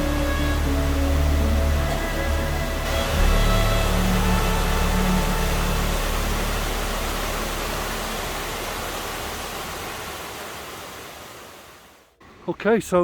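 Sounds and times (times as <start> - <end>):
background music: 0.0 - 8.5
waterfall rushing: 0.0 - 12.1.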